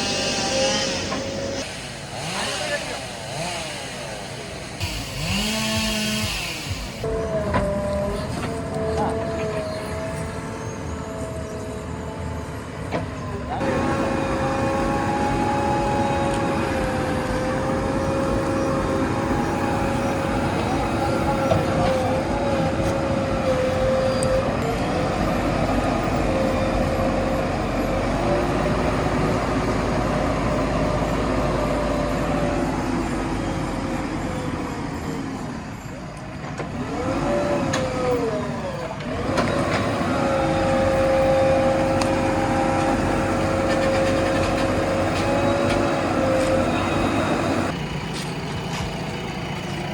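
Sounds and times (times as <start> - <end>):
backhoe diesel engine running: 0.0 - 49.9.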